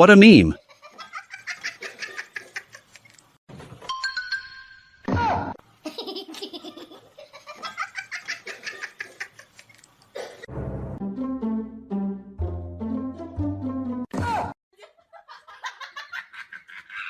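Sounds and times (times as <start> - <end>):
hearty laughter: 0.6 - 2.9, 5.8 - 9.6, 14.8 - 17.0
person crying out: 14.2 - 14.5.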